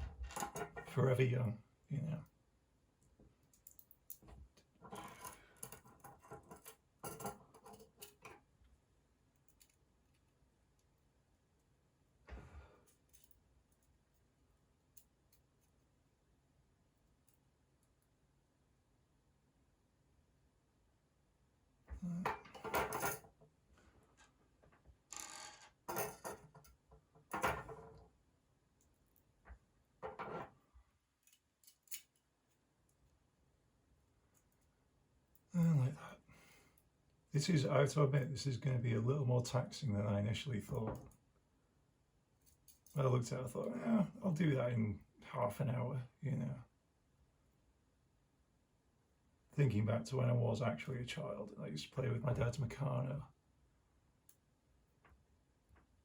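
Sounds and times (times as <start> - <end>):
small metal parts clicking and rattling: 3.4 - 8.4, 9.4 - 10.3, 12.8 - 14.2, 22.2 - 23.3, 25.1 - 27.9, 31.2 - 33.1, 42.4 - 43.0
small metal parts clinking: 12.8 - 13.9, 25.1 - 27.8, 31.2 - 32.6.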